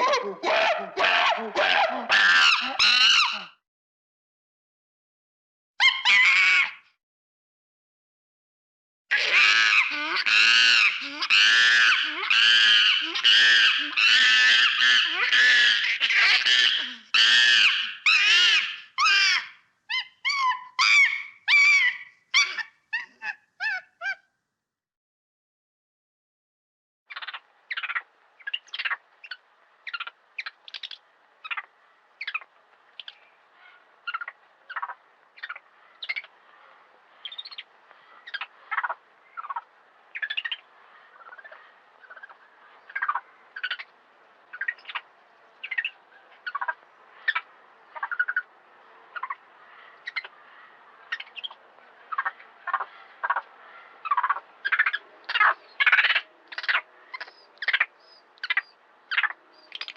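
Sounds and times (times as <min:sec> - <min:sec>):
monkey calls: 0:00.0 - 0:03.6, 0:09.1 - 0:24.2.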